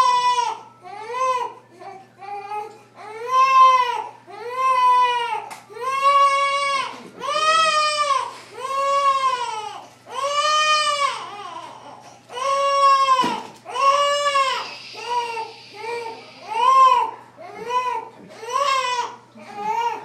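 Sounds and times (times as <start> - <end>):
newborn baby crying: 0.0 - 20.0
baby breathing: 14.4 - 16.8.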